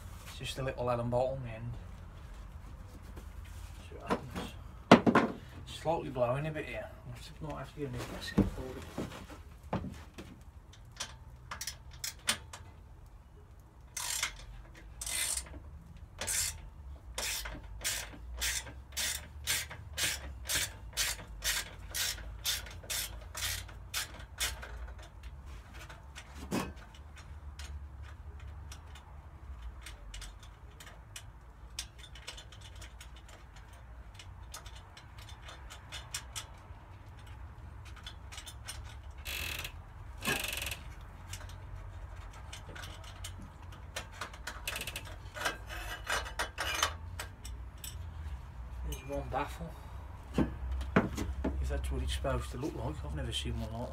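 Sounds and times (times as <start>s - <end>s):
tool scraping metal: 15.0s - 15.5s, 44.1s - 47.1s.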